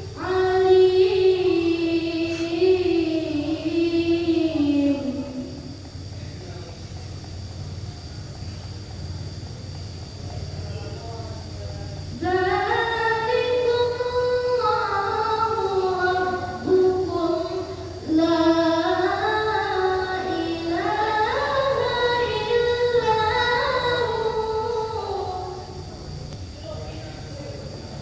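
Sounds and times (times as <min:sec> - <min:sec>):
child reciting melodically: 0:00.0 - 0:05.7, 0:12.1 - 0:25.8.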